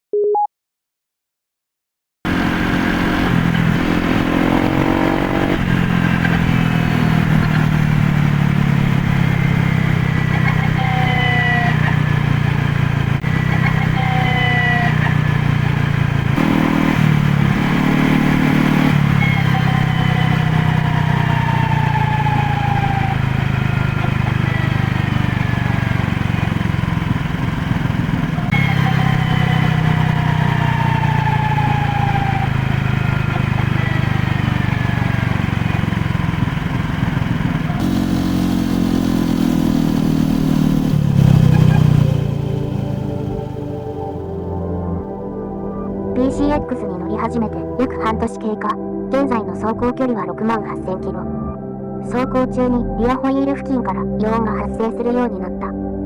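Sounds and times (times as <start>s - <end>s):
scooter engine running: 2.3s - 48.0s
high whine sliding down in pitch: 37.8s - 46.7s.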